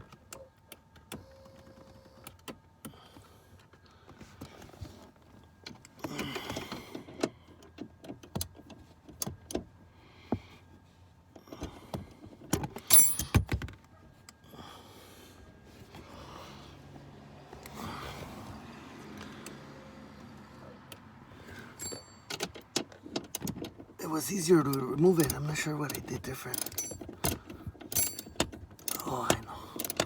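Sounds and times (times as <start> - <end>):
tools and parts clicking: 12.4 - 14.4, 24.7 - 30.0.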